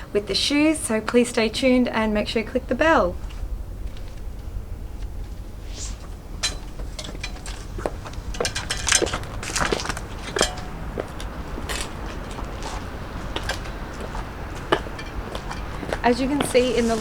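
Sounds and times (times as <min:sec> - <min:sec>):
high heel footsteps clicking: 0:07.0 - 0:16.8.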